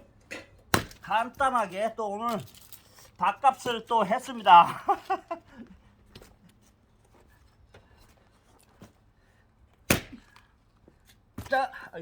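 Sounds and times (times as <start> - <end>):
sharp wooden thunk: 0.7 - 1.0, 9.9 - 10.2.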